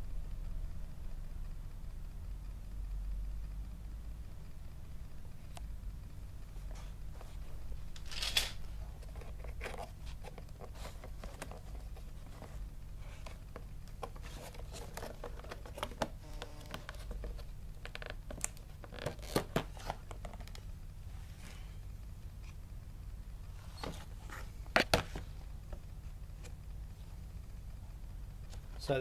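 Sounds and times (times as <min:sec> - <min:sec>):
steady low hum: 0:00.0 - 0:29.0
rustling and scraping: 0:06.5 - 0:22.6, 0:23.4 - 0:27.2.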